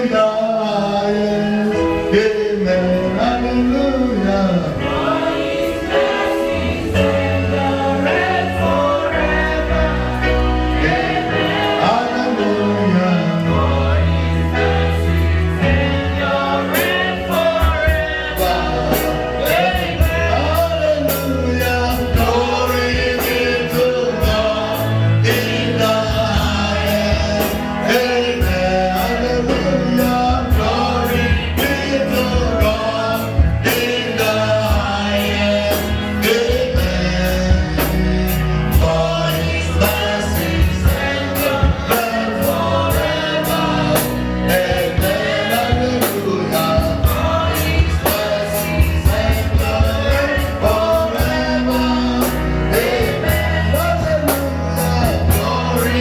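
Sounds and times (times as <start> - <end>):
bass: 0.0 - 56.0
keyboard: 0.0 - 56.0
voices singing together: 0.0 - 56.0
steady drum beat: 14.6 - 56.0.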